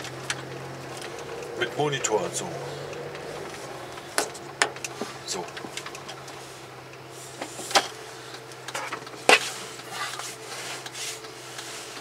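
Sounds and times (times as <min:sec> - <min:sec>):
interior clicks and knocks: 0:00.0 - 0:01.7, 0:02.8 - 0:09.5
car cabin road noise: 0:00.0 - 0:12.0.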